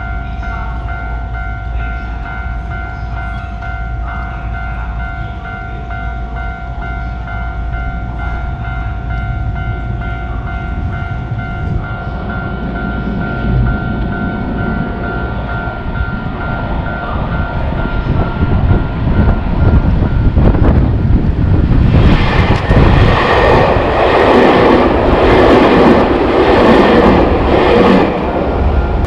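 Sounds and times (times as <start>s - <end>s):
railroad crossing alarm ding: 0.0s - 21.0s
passing train rumble: 0.0s - 29.0s.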